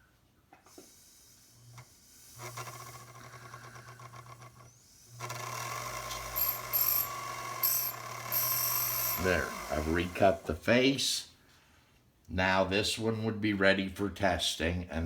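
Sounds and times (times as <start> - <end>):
grinding wheel on steel: 2.2 - 10.6.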